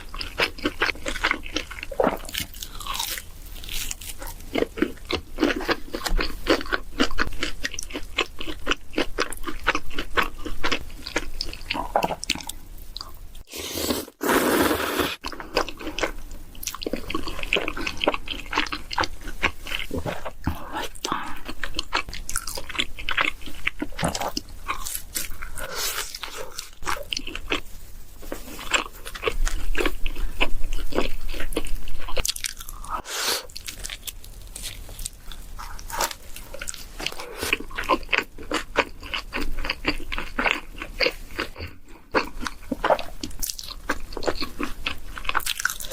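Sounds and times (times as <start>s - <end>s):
crunchy bites: 0.4s - 10.8s.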